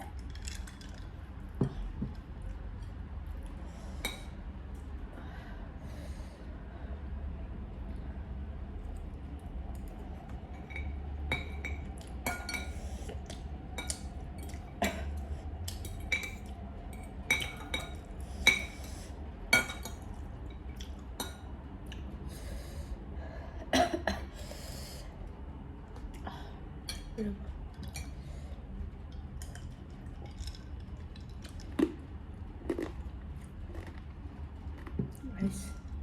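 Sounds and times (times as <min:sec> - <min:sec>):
utensils clinking against dishes: 0:10.6 - 0:12.9, 0:15.8 - 0:19.0.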